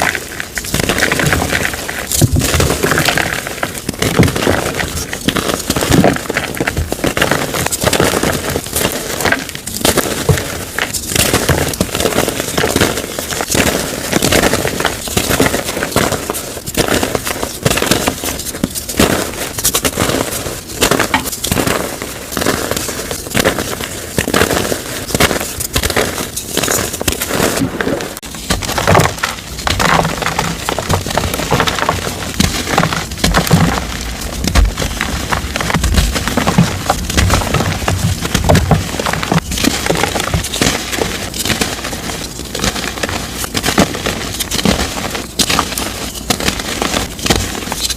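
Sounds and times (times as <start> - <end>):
chalk being crushed: 0.0 - 47.9.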